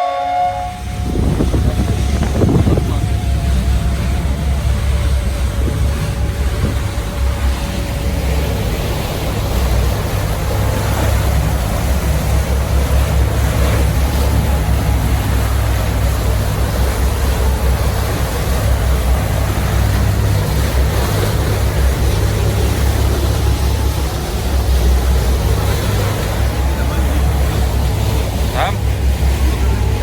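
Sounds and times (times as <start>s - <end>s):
motorboat engine rumble: 0.0s - 30.0s
water noise: 0.0s - 30.0s
wind noise: 0.8s - 7.2s.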